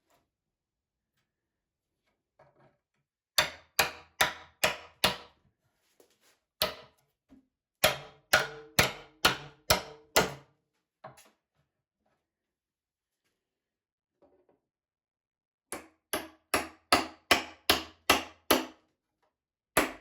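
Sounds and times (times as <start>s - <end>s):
hammer striking wooden boards: 3.4s - 5.4s, 6.6s - 6.9s, 7.8s - 10.4s, 15.8s - 18.8s, 19.8s - 20.0s.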